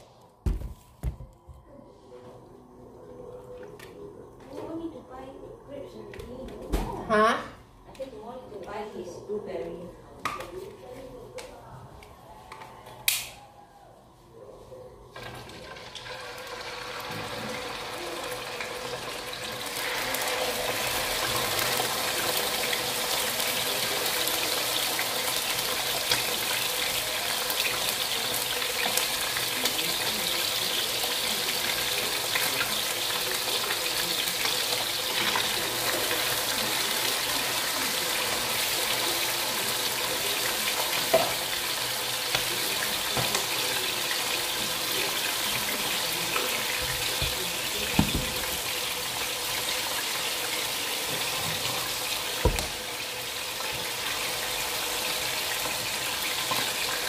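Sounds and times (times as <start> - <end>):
tap water running into a sink: 15.2 - 57.0.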